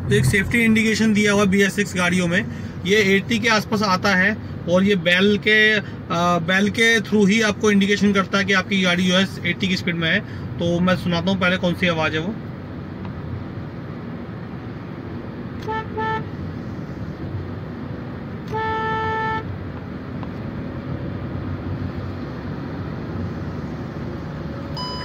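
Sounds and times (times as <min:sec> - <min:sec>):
road and engine noise: 0:00.0 - 0:25.0
overspeed warning chime beeps: 0:24.8 - 0:25.0.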